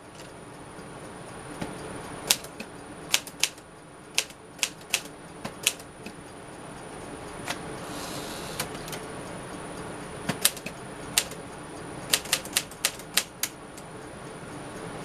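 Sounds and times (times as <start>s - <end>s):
typewriter keystrokes: 2.3s - 3.6s, 4.2s - 6.2s, 10.3s - 11.4s, 12.1s - 13.6s.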